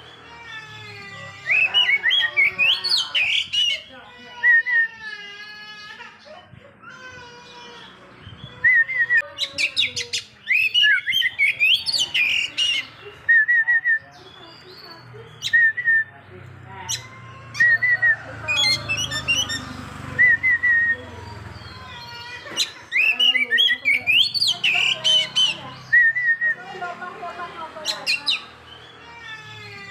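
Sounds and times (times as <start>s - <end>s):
high bird trill: 0.0s - 3.9s, 7.4s - 16.1s, 16.9s - 26.5s
bird whistling and chattering: 1.4s - 3.9s, 8.2s - 16.1s, 16.9s - 26.6s.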